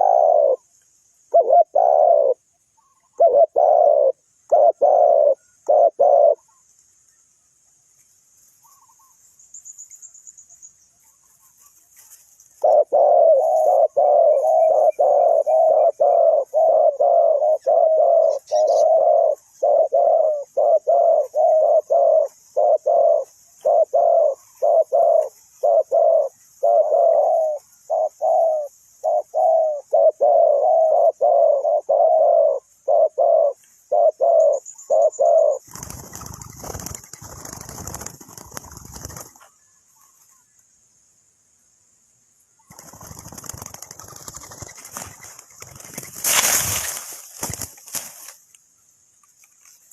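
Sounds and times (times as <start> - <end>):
dove cooing: 0.0 - 0.6, 1.3 - 6.6, 12.6 - 39.3
rumbling rustling noise: 43.8 - 48.4.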